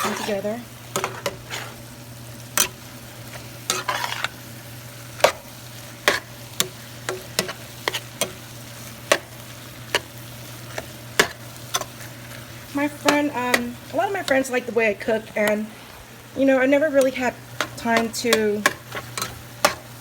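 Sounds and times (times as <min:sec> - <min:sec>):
utensil scraping and knocking pan: 0:00.0 - 0:01.8, 0:03.7 - 0:04.4
meat sizzling in a pan: 0:00.0 - 0:20.0.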